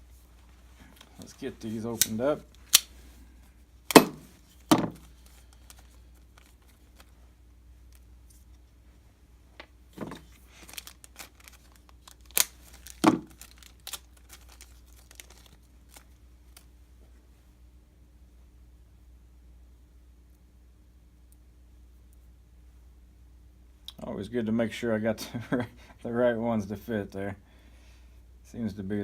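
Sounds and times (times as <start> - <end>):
plastic packets tearing and crinkling: 3.9 - 7.2, 10.0 - 16.7.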